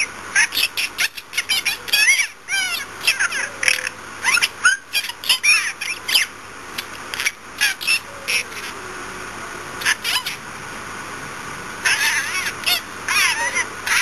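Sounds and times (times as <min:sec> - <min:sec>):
budgerigars chirping: 0:00.0 - 0:06.3, 0:11.8 - 0:14.0.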